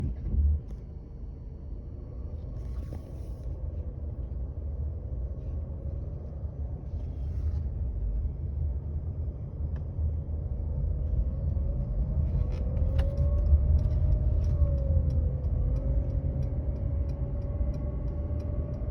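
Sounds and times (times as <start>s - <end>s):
car engine low rumble: 0.0s - 18.9s.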